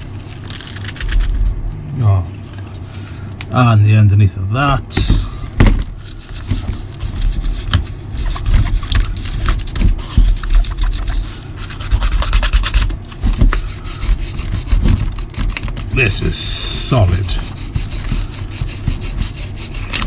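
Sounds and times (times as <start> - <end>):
stiff brush scrubbing mud: 6.0 - 20.0.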